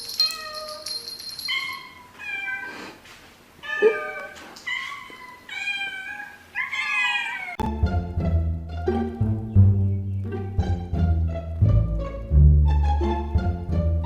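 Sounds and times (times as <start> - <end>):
cat meowing: 3.6 - 7.6.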